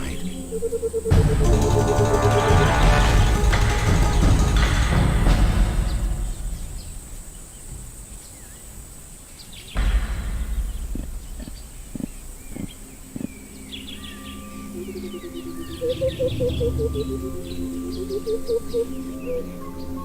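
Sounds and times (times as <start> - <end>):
birds chirping and calling: 0.0 - 2.2, 4.1 - 20.0
sudden loud burst of noise: 1.1 - 8.4, 9.7 - 13.0.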